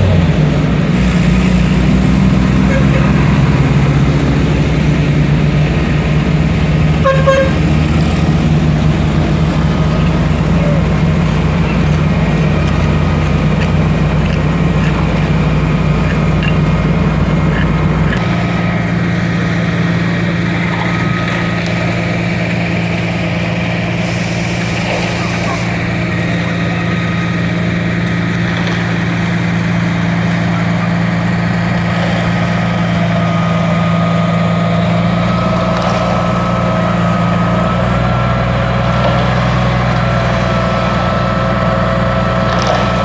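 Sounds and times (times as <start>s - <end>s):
diesel truck engine running: 0.0s - 43.0s.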